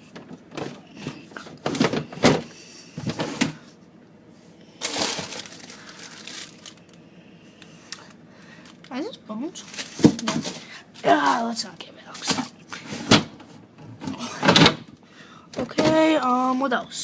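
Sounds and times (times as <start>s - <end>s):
rustling: 4.8s - 6.8s.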